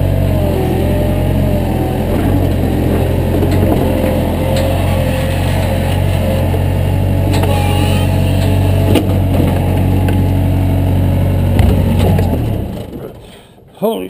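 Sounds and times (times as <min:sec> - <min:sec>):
large engine droning: 0:00.0 - 0:13.7
sharp metal clanks: 0:11.6 - 0:12.8.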